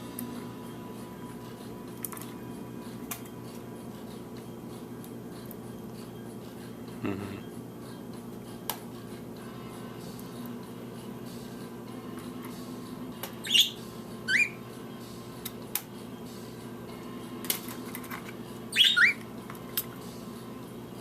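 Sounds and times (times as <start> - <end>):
budgerigars chirping: 13.5 - 14.6, 18.8 - 19.2.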